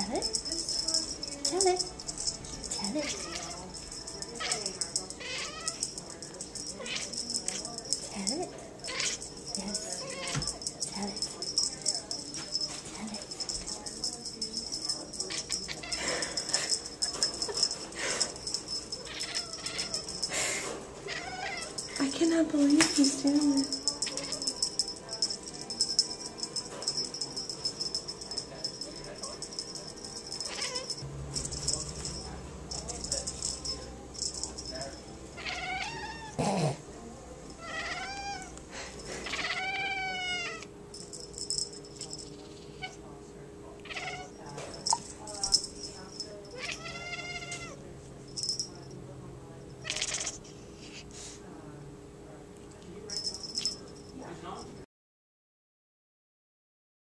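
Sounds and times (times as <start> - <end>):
light rattling: 0.0 - 35.2
cat meowing: 5.2 - 5.8, 6.8 - 7.2, 8.9 - 9.2, 21.1 - 21.8, 35.4 - 36.4, 37.6 - 38.6, 39.2 - 40.6, 46.6 - 47.8.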